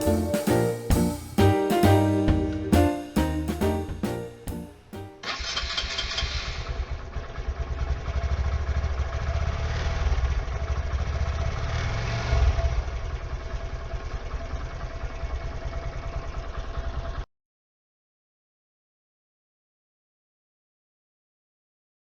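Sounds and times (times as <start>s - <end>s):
motorcycle engine idling: 13.1s - 17.2s.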